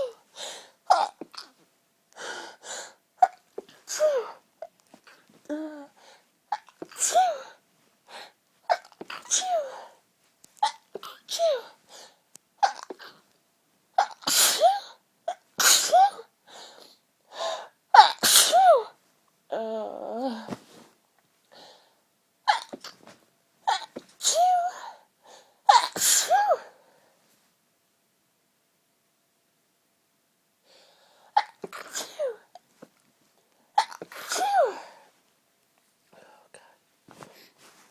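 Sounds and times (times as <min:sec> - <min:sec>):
woman sneezing: 0:14.0 - 0:15.0, 0:18.0 - 0:18.9, 0:23.7 - 0:25.0, 0:25.7 - 0:26.8, 0:31.4 - 0:32.5, 0:33.8 - 0:35.0.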